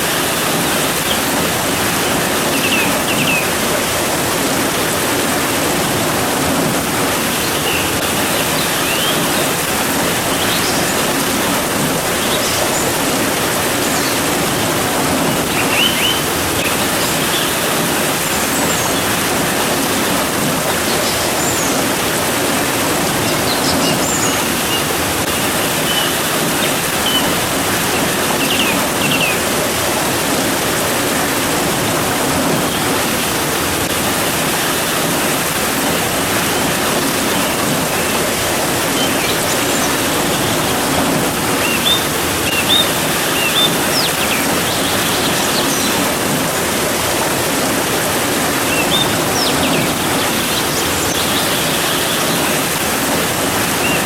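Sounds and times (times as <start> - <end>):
steady rain: 0.0 - 54.0
birds chirping: 0.1 - 3.9, 6.9 - 19.5, 20.4 - 29.7, 36.2 - 46.3, 48.3 - 54.0.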